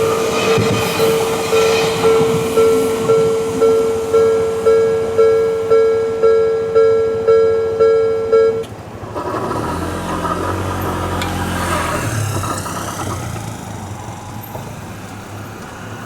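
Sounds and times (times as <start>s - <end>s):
low vehicle engine: 0.0s - 16.0s
level-crossing electronic bell: 1.0s - 8.7s.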